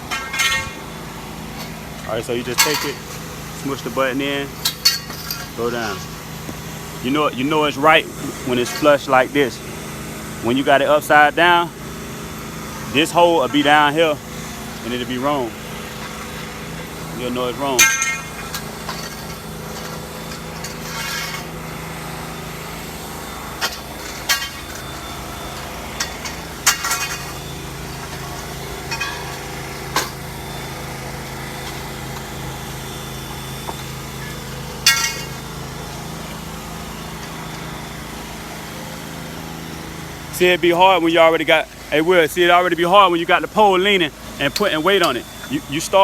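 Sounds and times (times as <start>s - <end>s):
metal tent poles clanking: 0.0s - 1.0s, 1.6s - 4.0s, 4.6s - 6.6s, 8.5s - 9.2s, 17.7s - 21.6s, 23.6s - 30.2s, 34.2s - 35.4s, 44.3s - 46.0s
engine hum: 0.0s - 46.0s.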